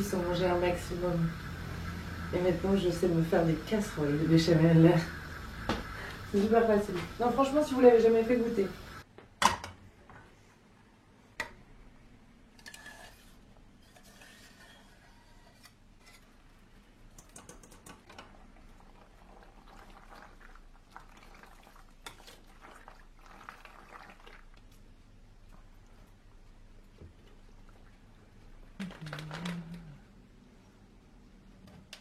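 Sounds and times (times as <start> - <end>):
utensil scraping saucepan: 12.6 - 16.6
wet sauce sounds: 18.4 - 28.0.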